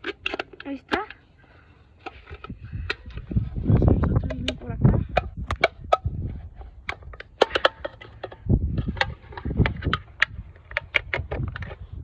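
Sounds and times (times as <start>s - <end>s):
metal can clicking and crackling: 0.0s - 1.2s, 6.8s - 11.8s.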